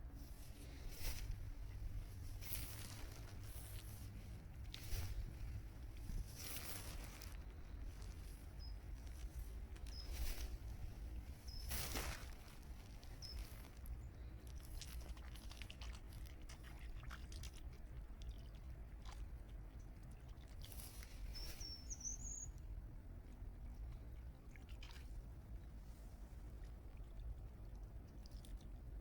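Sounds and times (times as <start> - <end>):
faint low rumble: 0.0 - 29.0
bird chirp: 8.0 - 10.6, 11.4 - 12.2, 13.1 - 14.2, 21.3 - 22.6
duck dabbling in water: 10.8 - 21.2.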